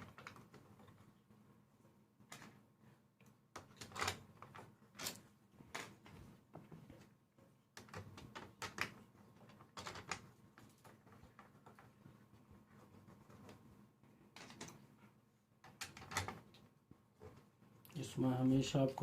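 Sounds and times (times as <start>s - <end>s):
plastic keyboard parts clicking: 7.8s - 10.3s, 15.6s - 16.6s.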